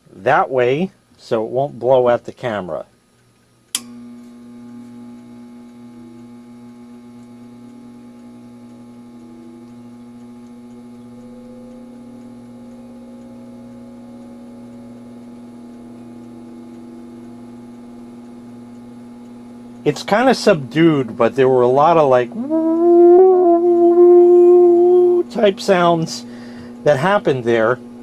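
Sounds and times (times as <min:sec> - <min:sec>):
fan motor humming: 0:03.5 - 0:28.0
faint rising tone: 0:09.2 - 0:19.0.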